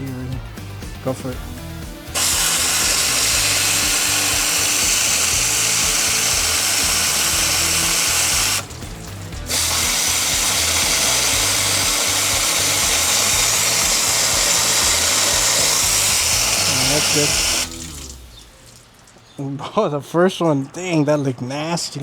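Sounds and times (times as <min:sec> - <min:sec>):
hissing rush of air and water: 0:02.1 - 0:19.2.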